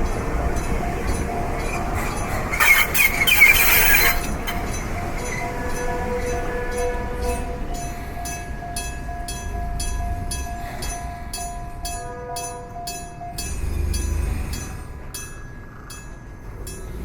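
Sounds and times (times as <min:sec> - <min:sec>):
train rumble: 0:00.0 - 0:17.0
level crossing bell ringing: 0:03.6 - 0:17.0.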